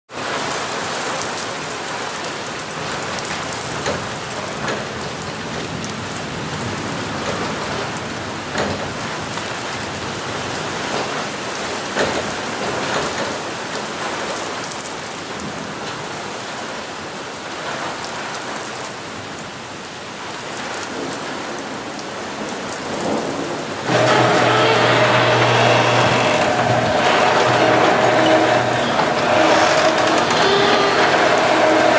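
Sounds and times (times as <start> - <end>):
heavy rain falling: 0.2 - 31.9
steady tones at several pitches: 23.9 - 31.9.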